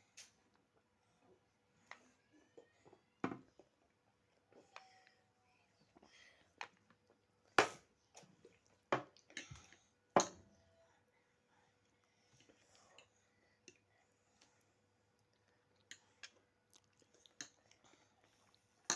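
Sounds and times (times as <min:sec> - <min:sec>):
soft chewing: 0:00.0 - 0:18.9.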